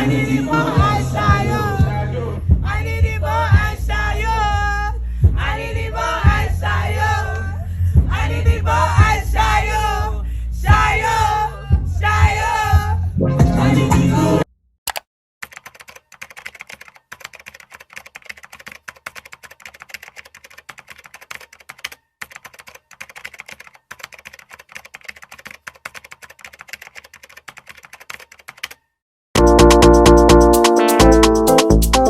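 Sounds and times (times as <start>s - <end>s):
rapid typing on a keyboard: 14.9s - 28.9s.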